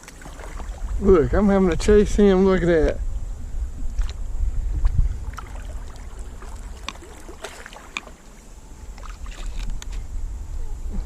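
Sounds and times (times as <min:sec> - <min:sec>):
paddle splashes: 0:00.0 - 0:01.2, 0:03.8 - 0:09.9
wind on microphone: 0:00.2 - 0:11.0
water dripping: 0:05.3 - 0:08.3.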